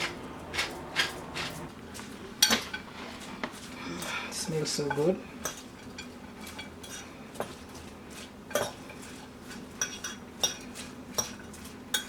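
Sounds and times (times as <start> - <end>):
spoon stirring in a bowl: 0.0 - 12.0
spoon clinking against bowl: 11.2 - 12.0.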